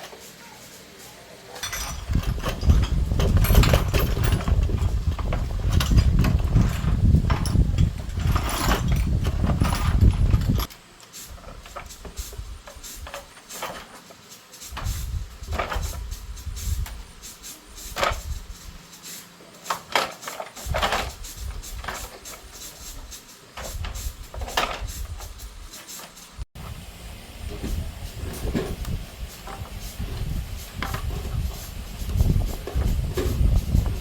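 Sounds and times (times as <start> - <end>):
metal tools knocking and clinking: 1.6 - 10.7.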